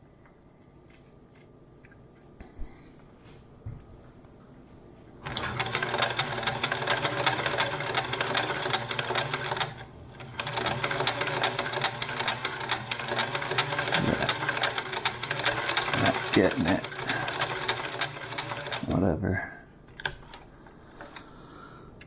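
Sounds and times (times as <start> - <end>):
sewing machine stitching: 5.3 - 19.0.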